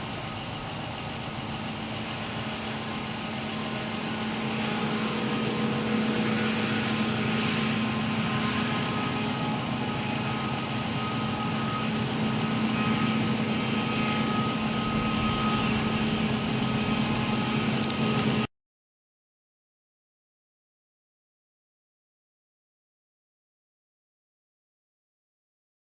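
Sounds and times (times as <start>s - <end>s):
diesel machinery running: 0.0s - 18.5s.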